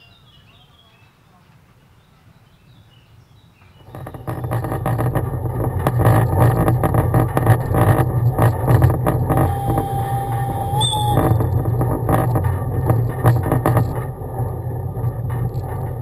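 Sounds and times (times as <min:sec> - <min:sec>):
train rumbling and clattering: 0:03.8 - 0:16.0
thin steady tone: 0:09.2 - 0:13.2.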